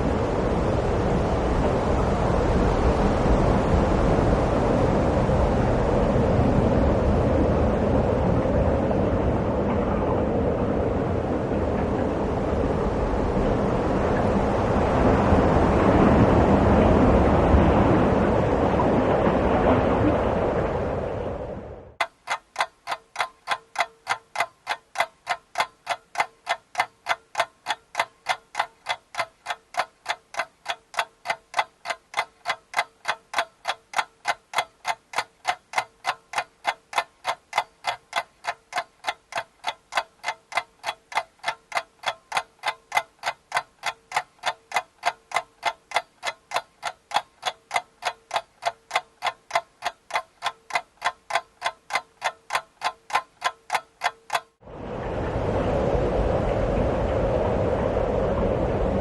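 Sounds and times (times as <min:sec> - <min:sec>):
clock ticking: 0:22.0 - 0:54.6.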